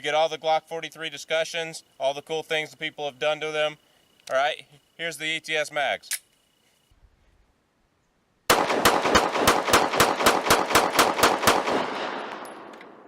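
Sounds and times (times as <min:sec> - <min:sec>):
pistol shots fired rapidly: 0:08.5 - 0:13.0.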